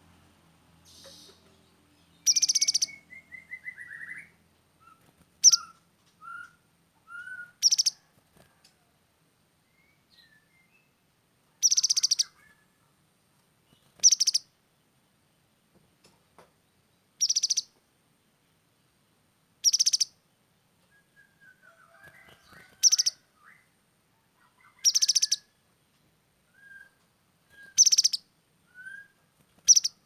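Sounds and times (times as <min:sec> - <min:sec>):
bird high-pitched trills: 0:02.2 - 0:04.2, 0:27.8 - 0:28.2.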